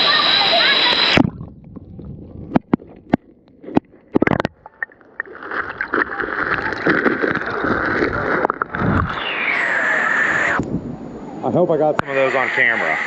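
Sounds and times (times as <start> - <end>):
water rushing in waterfall pool: 0.0 - 1.4, 12.1 - 13.0
knocks and splashes: 1.2 - 8.8.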